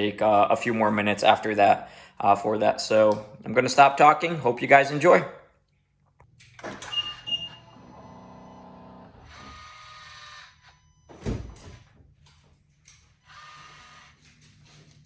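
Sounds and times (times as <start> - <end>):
electric pump whirring: 6.4 - 11.0, 13.1 - 14.9.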